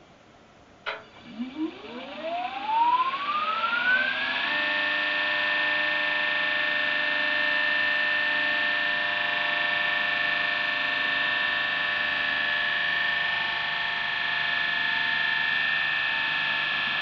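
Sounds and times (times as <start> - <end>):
electric motor whine: 1.2 - 17.0.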